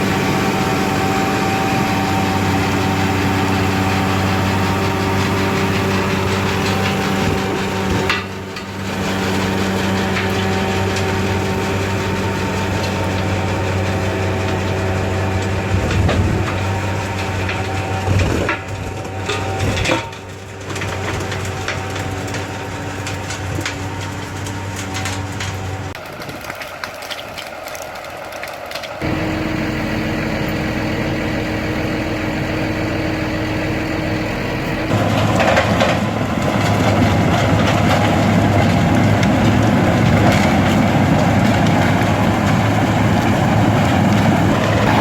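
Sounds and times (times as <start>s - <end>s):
rotavator churning ground: 0.0s - 45.0s
tractor engine running: 0.0s - 45.0s
knocks and cracks: 17.4s - 29.0s.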